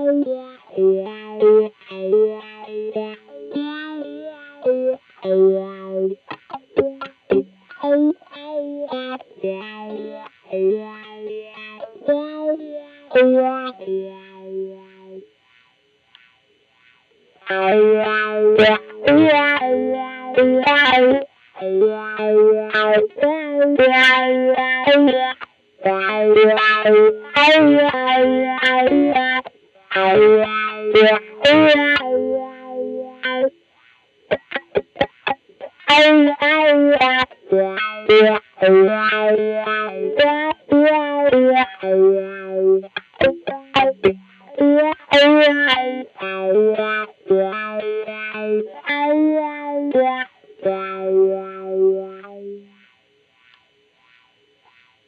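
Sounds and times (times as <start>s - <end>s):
quick picked guitar stabs: 0.0s - 15.2s, 17.4s - 33.5s, 34.3s - 54.8s
electric guitar with vibrato: 0.0s - 55.0s.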